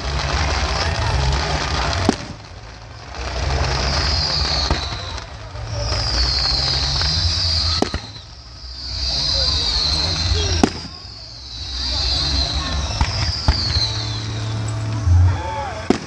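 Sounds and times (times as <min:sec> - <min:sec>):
fireworks shells bursting: 0:00.0 - 0:15.1
high hissing crackle: 0:00.0 - 0:16.0
low rumble: 0:04.7 - 0:16.0.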